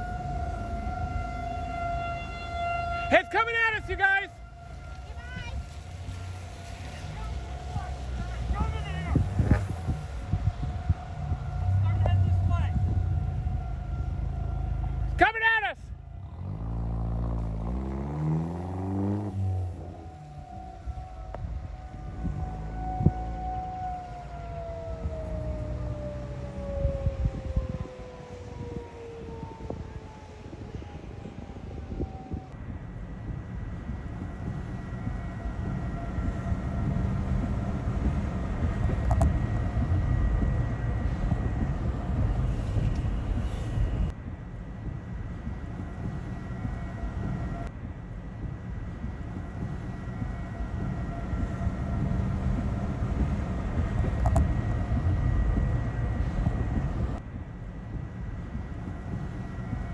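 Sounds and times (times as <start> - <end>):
tornado warning siren: 0.0 - 59.9
vehicle engine revving: 4.4 - 15.2, 16.0 - 20.6.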